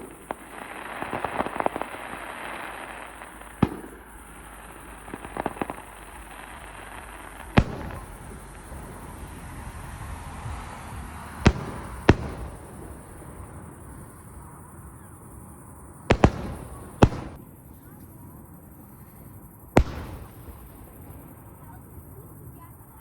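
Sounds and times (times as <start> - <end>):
fireworks bursting: 0.0 - 23.0.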